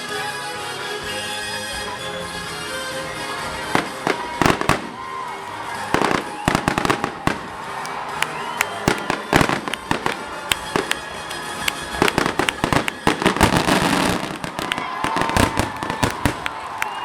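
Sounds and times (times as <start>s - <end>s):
fireworks bangs and crackles: 3.6s - 17.0s.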